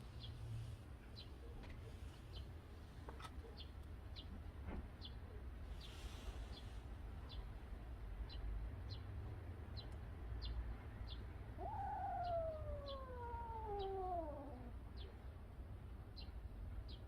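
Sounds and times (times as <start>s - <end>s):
cat meowing: 11.6s - 14.8s.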